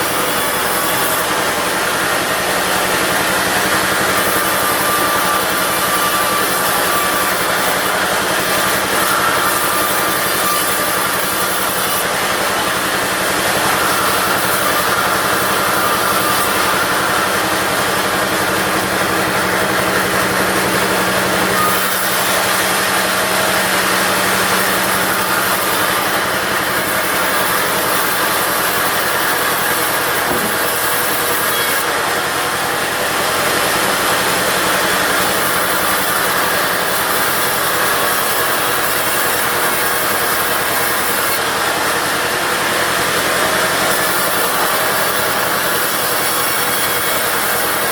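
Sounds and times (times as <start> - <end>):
diesel bandsaw sawing wood: 0.0 - 47.9.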